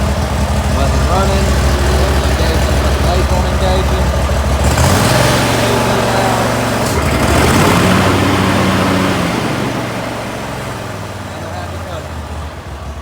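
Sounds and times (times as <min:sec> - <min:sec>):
lawn mower engine running: 0:00.0 - 0:13.0.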